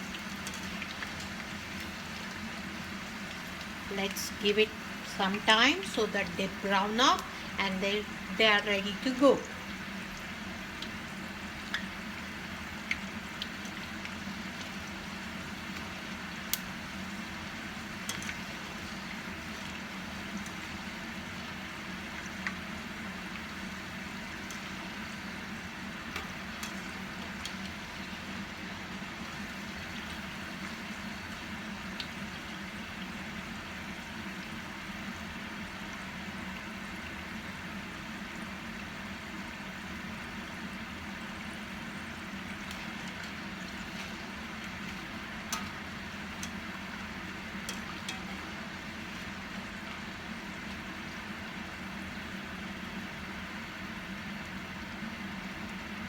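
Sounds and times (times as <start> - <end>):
oil sizzling while deep-frying: 0.0 - 56.0.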